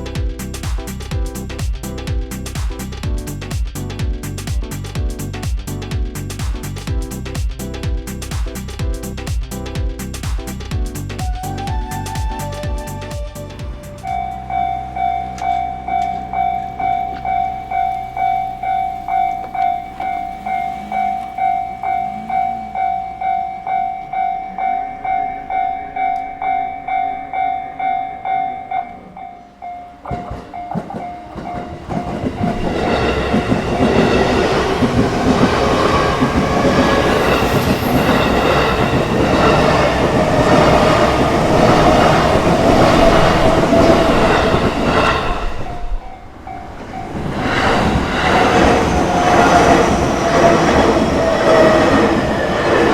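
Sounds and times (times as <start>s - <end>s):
electric train passing: 0.0s - 3.5s, 4.2s - 52.9s
train wheel clatter: 13.6s - 22.5s, 28.2s - 52.9s
level-crossing alarm bell ringing: 14.1s - 52.9s.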